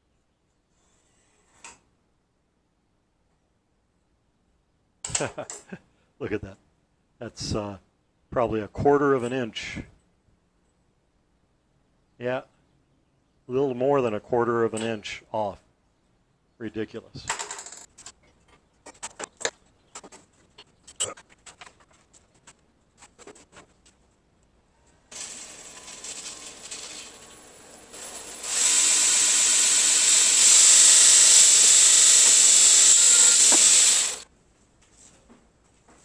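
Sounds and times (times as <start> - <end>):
power tool whining: 25.1 - 34.2.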